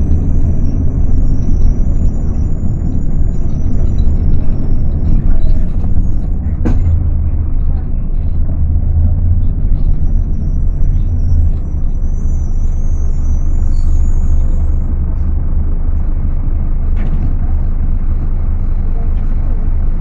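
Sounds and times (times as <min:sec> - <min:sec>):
bus diesel engine rumble: 0:00.0 - 0:20.0
faint high whistle: 0:09.9 - 0:14.9.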